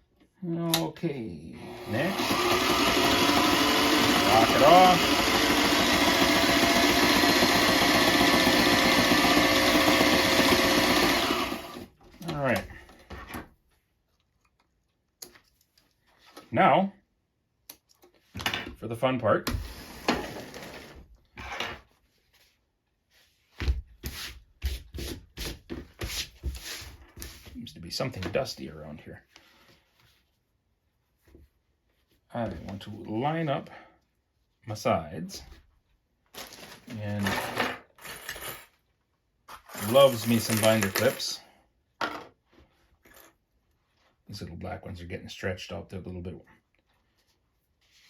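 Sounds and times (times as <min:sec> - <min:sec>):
sewing machine stitching leather: 0:01.6 - 0:11.9, 0:39.7 - 0:41.2.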